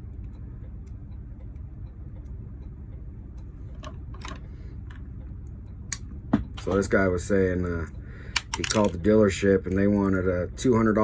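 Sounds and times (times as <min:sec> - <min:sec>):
steady low rumble: 0:00.0 - 0:11.0
small metallic clicks: 0:08.3 - 0:09.1.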